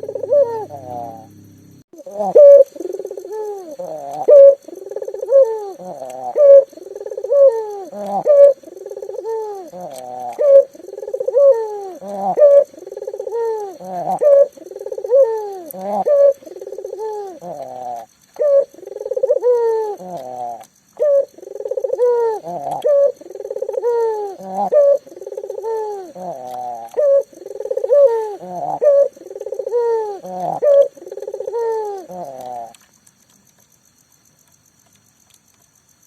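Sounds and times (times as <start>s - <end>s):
dove cooing: 0.0s - 32.8s.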